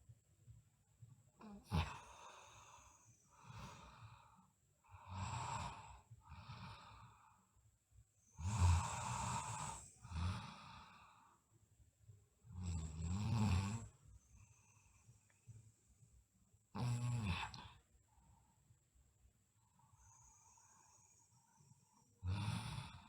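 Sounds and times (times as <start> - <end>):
light snoring rattle: 1.4 - 7.4, 8.2 - 11.4, 12.5 - 15.3, 16.8 - 17.8, 19.9 - 23.0.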